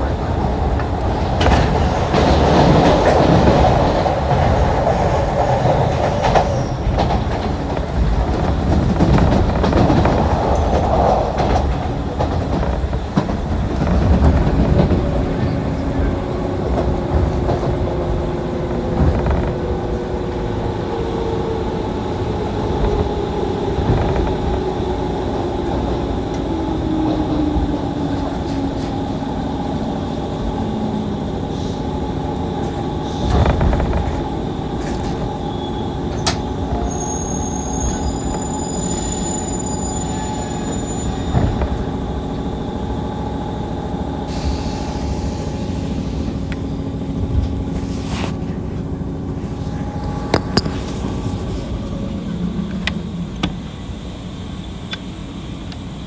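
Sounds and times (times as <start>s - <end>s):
train wheels clattering: 0.0s - 53.8s
train braking whine: 14.8s - 56.0s.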